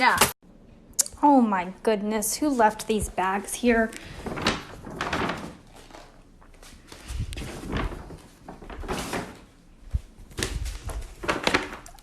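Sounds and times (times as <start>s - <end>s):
cat rustling inside a bag: 4.0s - 11.9s.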